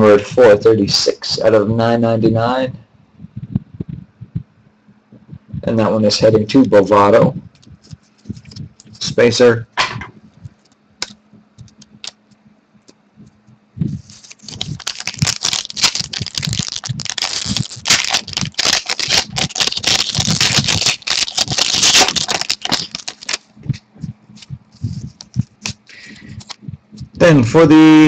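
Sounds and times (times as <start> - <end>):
foil wrapper tearing and crumpling: 14.0 - 23.5.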